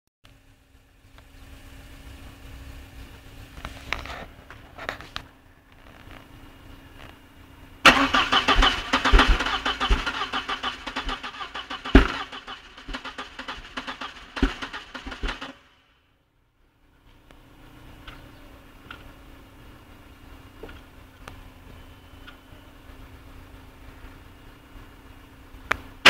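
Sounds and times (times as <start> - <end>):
car engine cranking: 0.8 - 15.8
clicks: 22.2 - 22.5.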